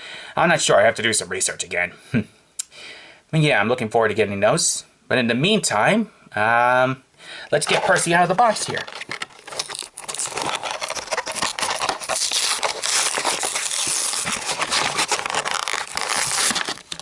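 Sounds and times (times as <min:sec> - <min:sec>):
cardboard tearing and scraping: 0:07.6 - 0:17.0
packaging crinkling and crackling: 0:07.6 - 0:17.0.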